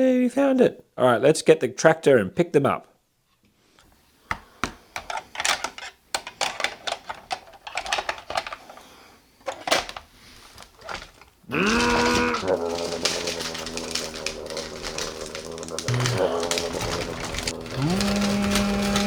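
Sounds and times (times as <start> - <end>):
plastic toys clicking and clattering: 4.6 - 19.0.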